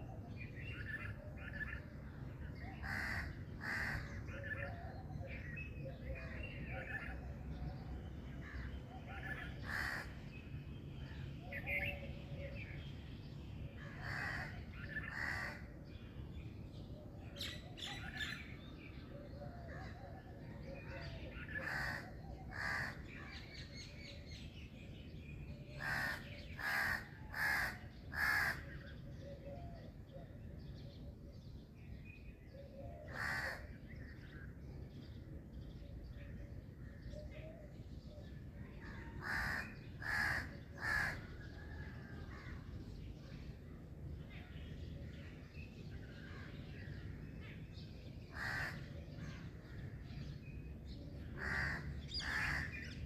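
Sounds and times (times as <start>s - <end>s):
birds calling: 2.6s - 4.8s, 25.6s - 29.6s, 38.0s - 43.5s, 45.2s - 50.0s, 50.9s - 53.0s.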